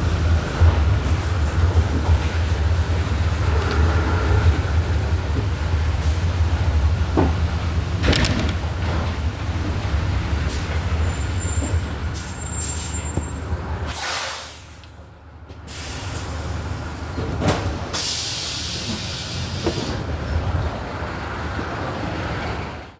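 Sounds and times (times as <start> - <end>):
diesel bus engine running: 0.0 - 22.7.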